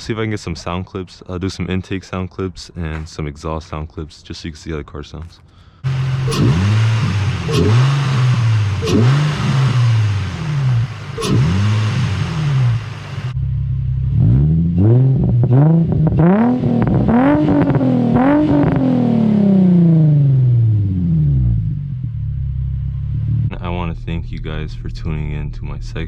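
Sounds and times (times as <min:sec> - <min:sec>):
car engine revving: 0:05.8 - 0:13.4, 0:14.0 - 0:23.6
hiss: 0:05.8 - 0:13.4.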